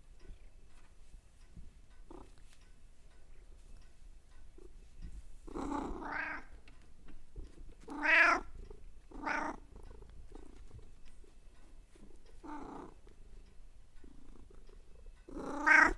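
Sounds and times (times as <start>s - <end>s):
cat purring: 2.0s - 2.6s, 3.3s - 15.9s
cat calls: 5.6s - 6.5s, 7.9s - 8.5s, 9.1s - 9.6s, 15.3s - 15.9s.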